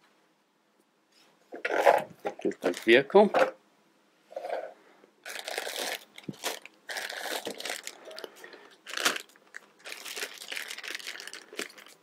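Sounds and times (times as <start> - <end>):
plastic pieces rustling and scraping: 4.4 - 12.0.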